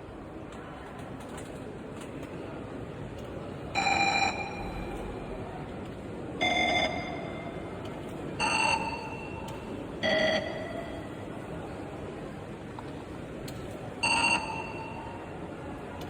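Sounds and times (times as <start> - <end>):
steady background noise: 0.0 - 16.0
high-speed morse code beeping: 3.8 - 4.8, 6.4 - 7.3, 8.4 - 9.4.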